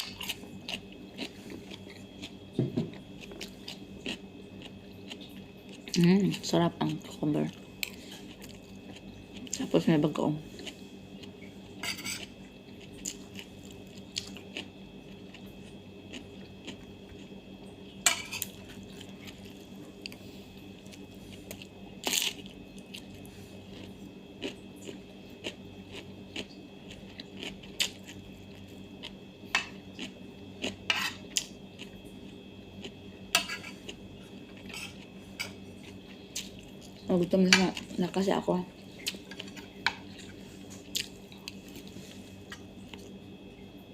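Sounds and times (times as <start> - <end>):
background hum: 0.0 - 43.9
cutlery clinking on a plate: 11.8 - 12.2.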